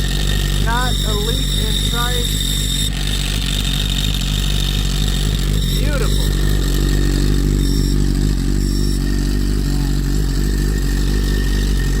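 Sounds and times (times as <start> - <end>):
dry clutch clatter: 0.0 - 12.0
motorcycle engine idling: 0.0 - 12.0.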